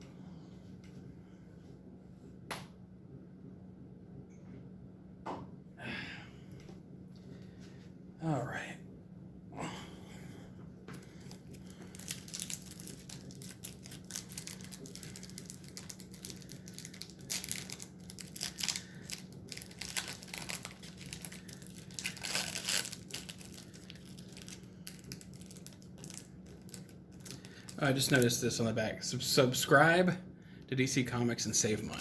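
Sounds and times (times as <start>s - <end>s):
wrapper torn open and crinkled: 11.2s - 28.4s.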